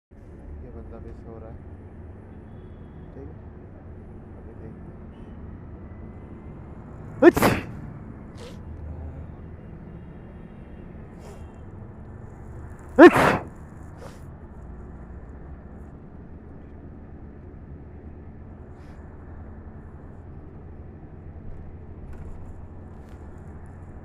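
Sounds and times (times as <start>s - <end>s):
person sneezing loudly: 7.2s - 7.8s, 13.0s - 14.2s.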